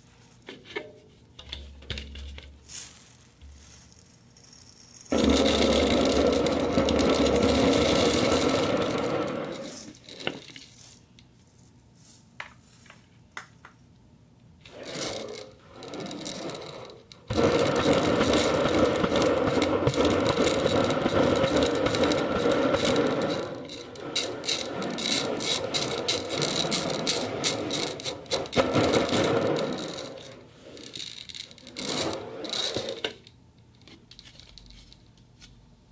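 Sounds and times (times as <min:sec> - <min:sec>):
ceramic balls rattling: 0:02.7 - 0:11.0.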